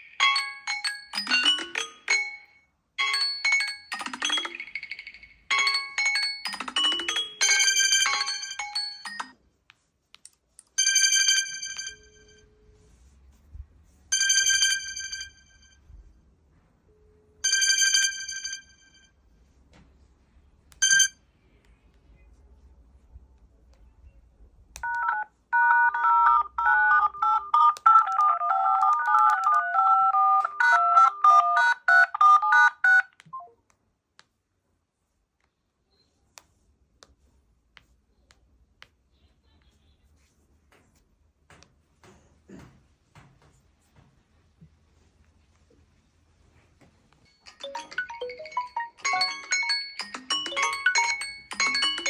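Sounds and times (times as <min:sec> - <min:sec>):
electronic ringtone chimes: 0:00.0 - 0:09.4, 0:47.3 - 0:52.0
mobile phone ringtone: 0:00.0 - 0:09.4, 0:10.8 - 0:12.6, 0:14.1 - 0:15.8, 0:17.4 - 0:19.1, 0:20.8 - 0:21.2, 0:24.8 - 0:33.5, 0:47.3 - 0:52.0.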